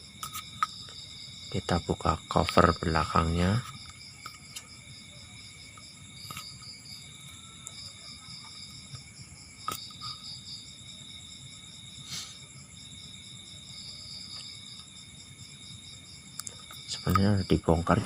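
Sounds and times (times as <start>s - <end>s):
crickets chirping: 0.0s - 18.0s.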